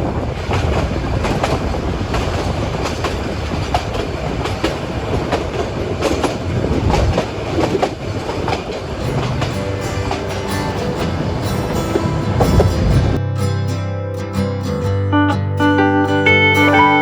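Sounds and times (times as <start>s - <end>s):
train carriages rumbling: 0.0s - 13.2s
wheels clacking over rail joints: 0.0s - 13.2s.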